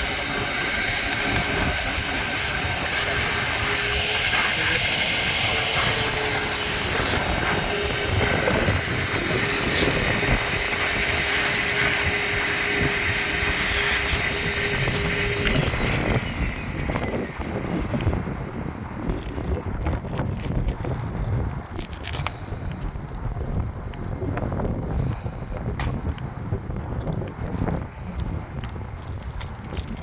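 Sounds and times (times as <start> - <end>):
vacuum cleaner running: 0.0 - 19.8.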